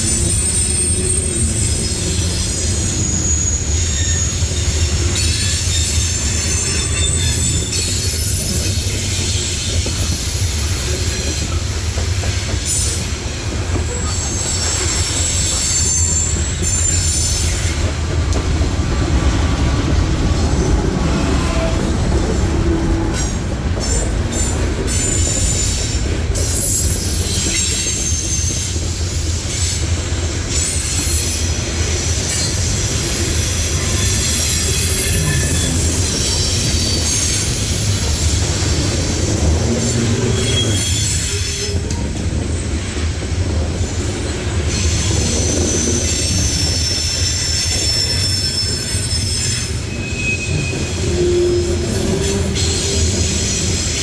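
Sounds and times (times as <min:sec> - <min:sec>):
train cars rumbling past: 0:00.0 - 0:54.0
train wheels squealing on rails: 0:00.0 - 0:54.0.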